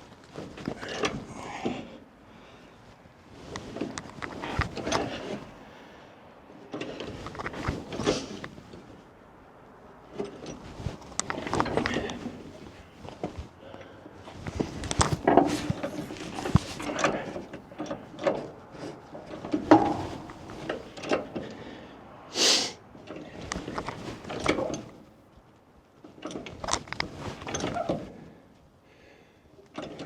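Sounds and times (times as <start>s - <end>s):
hand tools clanking on metal: 15.2s - 21.6s
short hiss: 22.3s - 22.8s.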